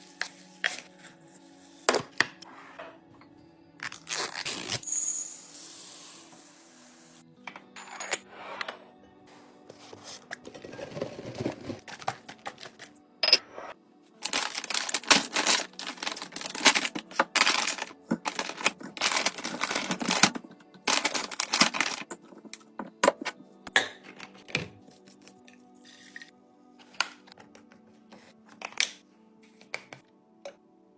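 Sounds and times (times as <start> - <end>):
faint background music: 0.0 - 30.9
small hard items clattering: 9.9 - 13.0, 14.2 - 25.4.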